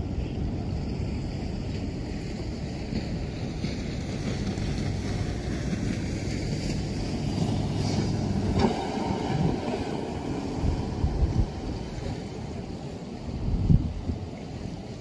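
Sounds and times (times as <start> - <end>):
low steady rumble: 0.0 - 15.0
wind buffeting microphone: 0.0 - 15.0.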